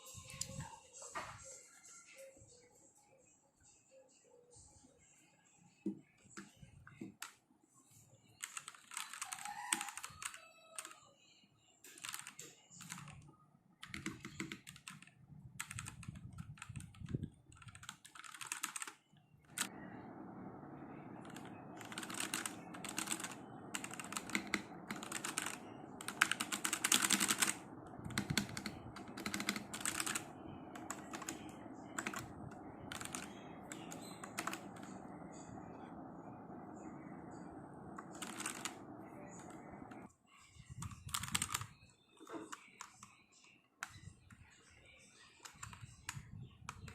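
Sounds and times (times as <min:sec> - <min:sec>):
typing on mechanical keyboard: 0:08.4 - 0:11.0, 0:11.9 - 0:13.2, 0:13.8 - 0:40.1, 0:40.8 - 0:41.7, 0:45.4 - 0:46.9
steady hum: 0:19.5 - 0:40.1.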